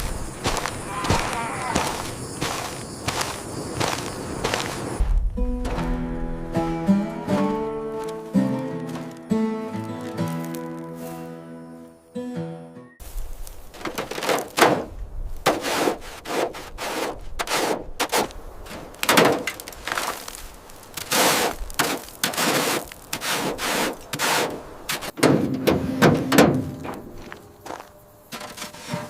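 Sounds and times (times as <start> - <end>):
scraping noises: 15.4 - 18.9, 21.0 - 27.5, 28.3 - 29.0
hard knocks and bangs: 25.2 - 27.2.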